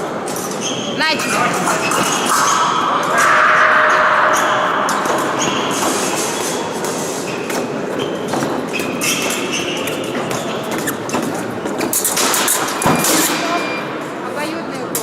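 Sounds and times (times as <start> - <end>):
steady hall noise: 0.0 - 15.0
short high squeaks: 8.8 - 11.2.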